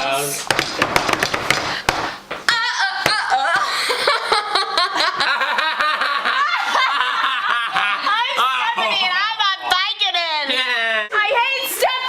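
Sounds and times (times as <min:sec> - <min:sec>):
girls laughing and giggling: 0:02.4 - 0:09.3.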